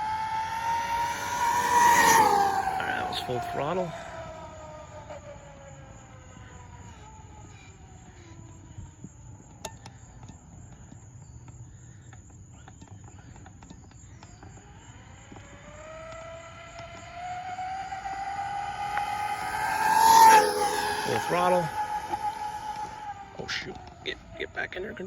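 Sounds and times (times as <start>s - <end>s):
electric motor whine: 0.0s - 9.6s, 14.2s - 24.4s.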